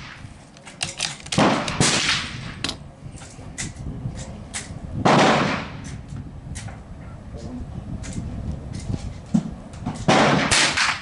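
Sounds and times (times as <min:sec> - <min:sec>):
rifle bolt clicks: 0:00.6 - 0:01.8
rifle shots: 0:01.3 - 0:02.5, 0:05.0 - 0:05.8, 0:10.1 - 0:11.0.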